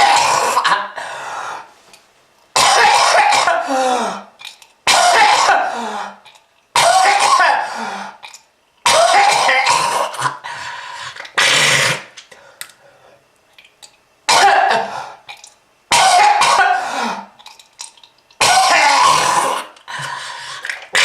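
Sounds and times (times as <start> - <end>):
person coughing harshly: 0.0 - 1.0, 2.6 - 4.3, 4.9 - 6.2, 6.8 - 7.9, 8.9 - 10.4, 14.3 - 15.2, 15.9 - 17.3, 18.4 - 20.1.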